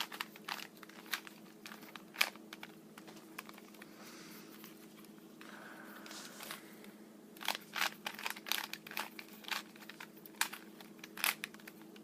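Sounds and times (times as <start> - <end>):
puzzle cube plastic clicks: 0.0 - 3.8, 7.4 - 12.0
faint steady hum: 0.0 - 12.0.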